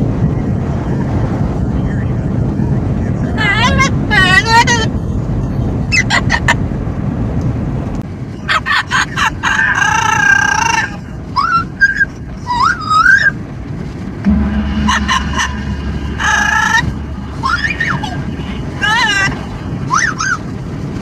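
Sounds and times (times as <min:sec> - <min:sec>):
car road and wind noise: 0:00.0 - 0:21.0
low steady hum: 0:14.2 - 0:20.2.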